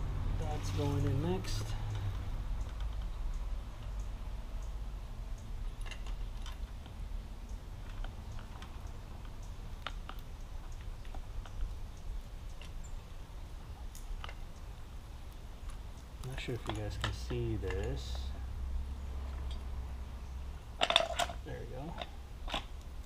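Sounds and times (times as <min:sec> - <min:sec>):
low steady hum: 0:00.0 - 0:23.0
small metal parts clicking: 0:01.5 - 0:11.6, 0:20.8 - 0:23.0.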